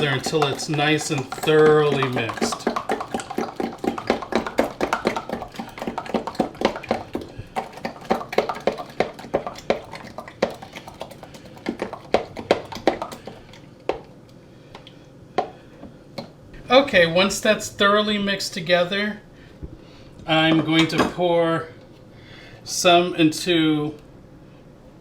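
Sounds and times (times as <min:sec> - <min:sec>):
utensil clinking and scraping bowl: 0:00.0 - 0:14.1
utensil stirring sauce in a bowl: 0:00.0 - 0:16.4.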